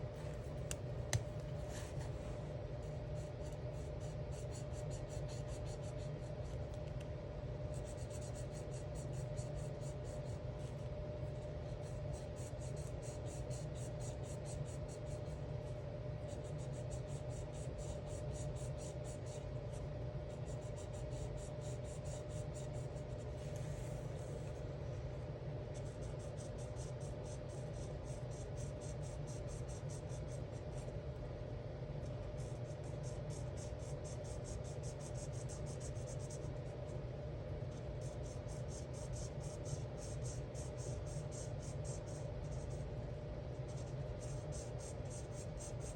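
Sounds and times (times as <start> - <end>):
steady low hum: 0.0 - 45.9
marker scratching on paper: 1.6 - 2.2, 2.8 - 6.6, 7.7 - 10.8, 11.4 - 15.4, 16.3 - 19.4, 20.3 - 24.5, 25.8 - 30.9, 32.3 - 36.7, 37.7 - 42.8, 43.6 - 45.9.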